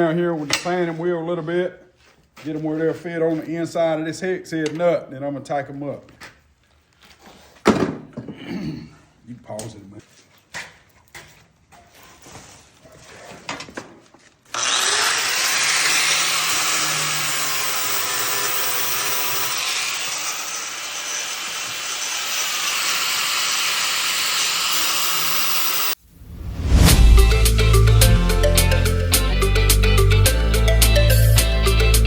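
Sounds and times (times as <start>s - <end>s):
grinder grinding steel bolt: 14.5s - 25.9s.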